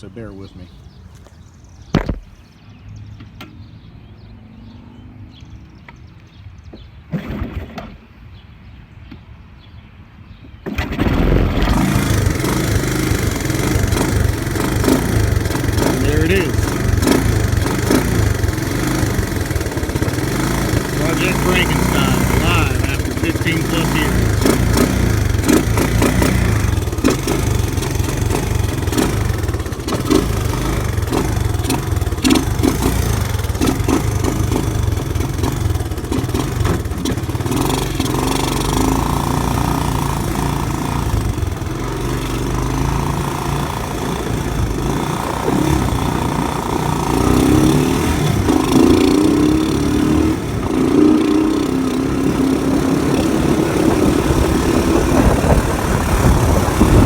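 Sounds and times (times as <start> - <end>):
recoil cord pull-start: 10.8 - 22.3, 24.1 - 38.5
motorcycle engine revving: 11.0 - 57.0.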